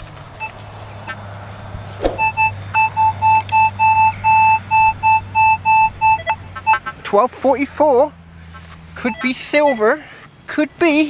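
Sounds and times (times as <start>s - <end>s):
short thump: 2.0s - 2.5s
metal detector beeping: 2.0s - 6.5s, 9.0s - 10.0s.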